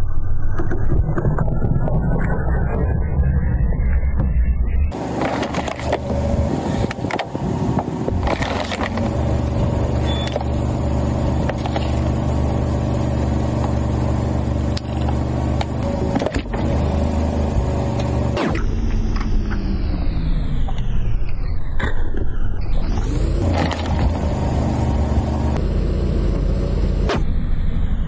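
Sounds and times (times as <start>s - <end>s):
car engine running slowly: 4.9s - 22.4s
objects cracking under tyres: 8.1s - 9.1s.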